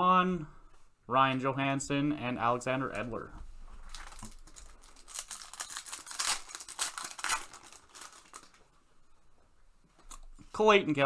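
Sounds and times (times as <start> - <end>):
foil wrapper tearing and crinkling: 3.8 - 8.8.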